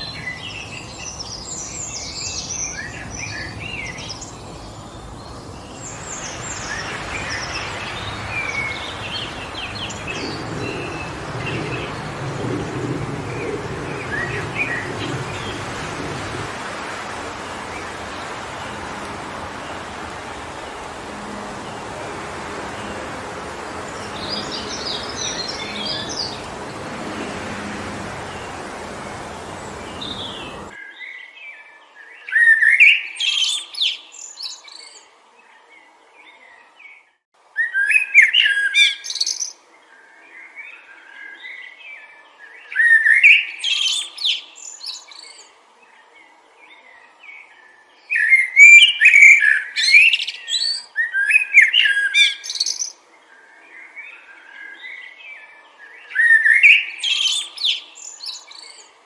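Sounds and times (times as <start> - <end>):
songbird singing: 0.0 - 37.0, 37.6 - 59.0
rushing wind noise: 2.8 - 30.8.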